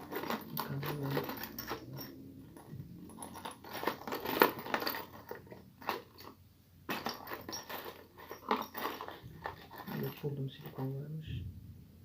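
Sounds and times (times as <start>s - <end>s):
small hard objects rattling: 0.0s - 11.0s.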